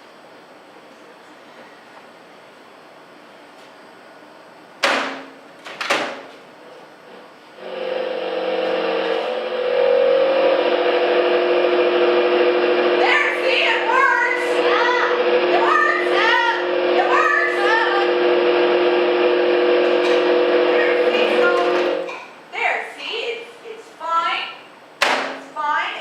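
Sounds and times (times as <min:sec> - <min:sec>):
microwave oven humming: 0:02.8 - 0:22.4
sharp knocks: 0:04.8 - 0:06.3, 0:25.0 - 0:25.4.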